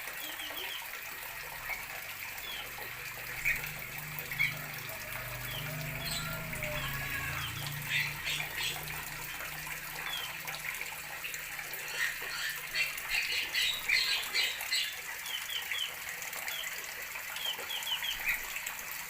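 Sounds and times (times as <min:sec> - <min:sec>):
small birds chirping: 0:11.8 - 0:16.8.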